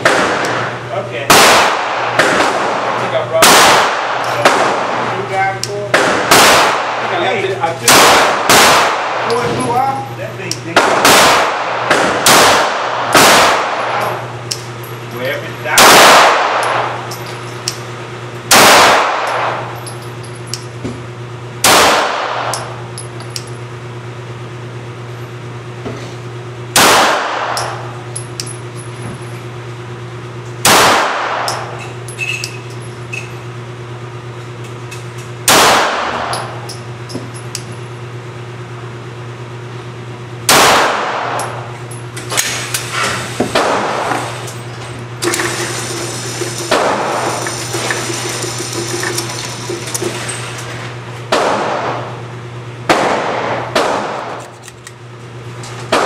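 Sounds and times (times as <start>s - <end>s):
pistol shots with echo: 0.0s - 5.1s, 5.9s - 7.2s, 7.8s - 9.4s, 10.8s - 14.0s, 15.8s - 17.0s, 18.5s - 19.6s, 21.6s - 22.7s, 26.8s - 27.8s, 30.6s - 31.6s, 35.5s - 36.4s, 40.5s - 41.6s, 51.3s - 52.1s, 52.9s - 54.4s
steady low hum: 0.0s - 56.0s.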